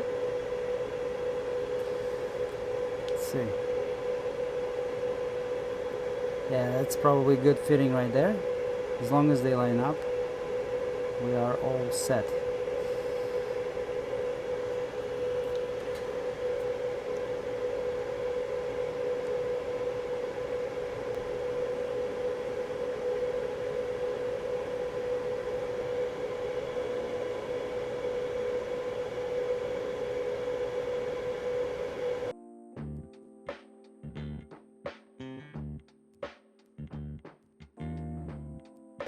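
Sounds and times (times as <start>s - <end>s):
electric fan whirring: 0.0s - 32.3s.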